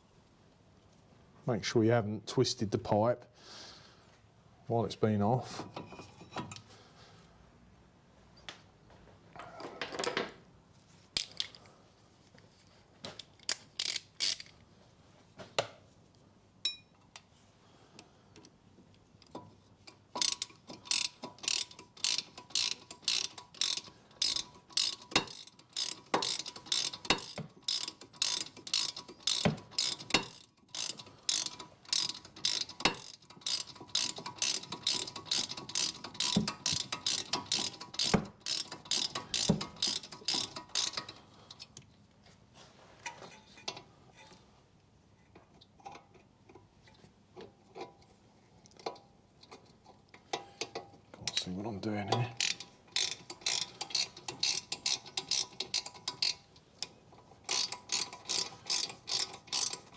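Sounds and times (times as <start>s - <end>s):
metal parts and tools clicking: 11.2s - 11.7s, 13.2s - 14.6s, 19.2s - 41.8s, 48.7s - 59.9s
ratchet clicking: 13.4s - 14.5s, 19.2s - 41.2s, 52.3s - 59.9s.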